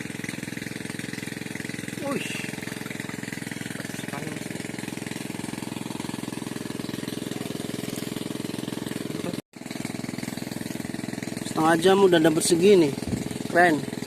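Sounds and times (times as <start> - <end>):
small engine chugging: 0.0 - 14.0.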